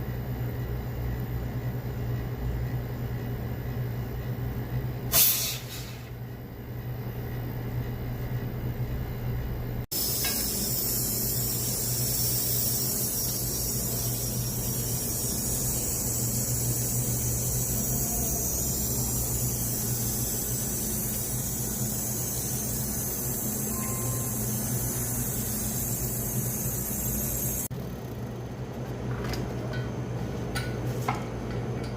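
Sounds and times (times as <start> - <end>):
pressurized gas hissing: 5.1 - 6.2, 9.9 - 27.7.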